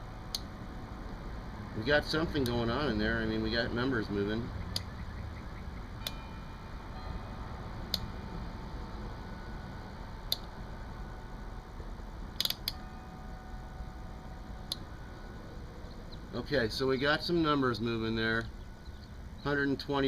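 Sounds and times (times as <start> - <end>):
low background rumble: 0.0 - 20.0.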